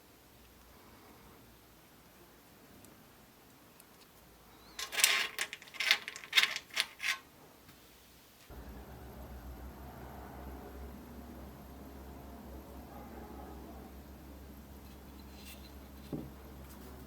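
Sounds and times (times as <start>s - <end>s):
sharp clicks and clatters: 4.8s - 7.2s
steady low hum: 8.5s - 17.0s.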